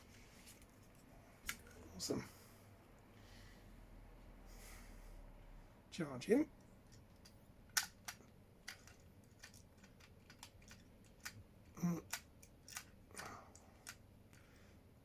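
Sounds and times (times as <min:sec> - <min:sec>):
small clicks and taps: 0:06.6 - 0:14.5.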